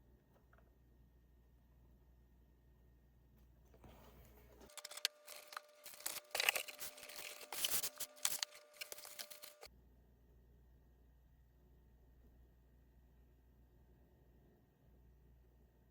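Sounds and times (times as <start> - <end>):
low room hum: 0.0 - 15.9
packaging being torn open: 4.7 - 9.7.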